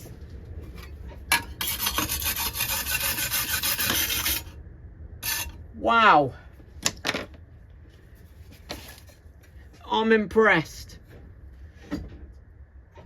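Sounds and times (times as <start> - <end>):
wire brush scrubbing metal: 1.3 - 4.5, 5.2 - 5.6.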